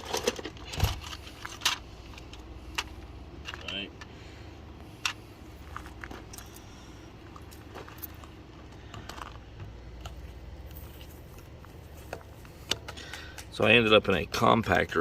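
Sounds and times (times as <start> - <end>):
faint low hum: 0.0 - 15.0
hand tools clicking and clinking: 10.0 - 13.9.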